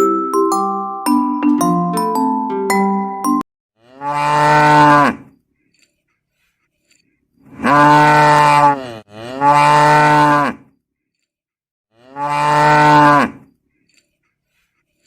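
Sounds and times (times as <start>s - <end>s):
cow mooing: 3.8s - 5.3s, 7.6s - 10.7s, 11.9s - 13.4s.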